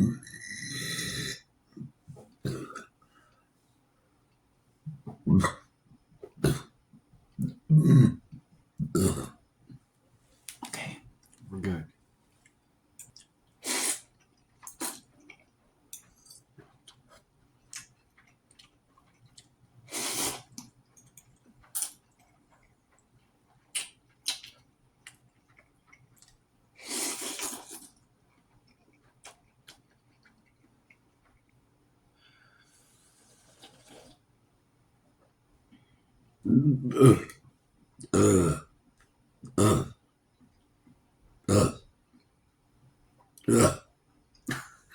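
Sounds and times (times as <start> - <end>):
eating clicks and smacks: 20.5 - 26.5.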